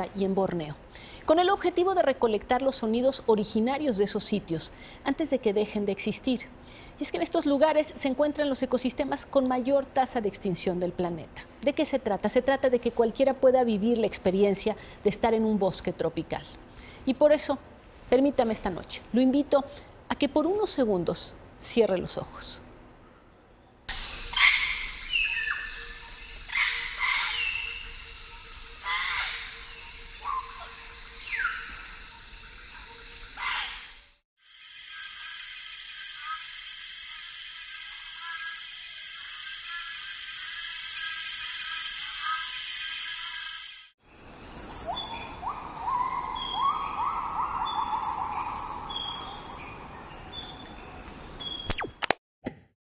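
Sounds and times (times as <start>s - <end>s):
high insect drone: 23.9s - 51.7s
pulsing insects: 23.9s - 52.0s
whistled calls sliding down: 24.1s - 28.1s, 28.8s - 33.8s
loud animal calls: 24.3s - 25.8s, 26.5s - 27.8s, 28.8s - 31.6s, 33.4s - 33.9s.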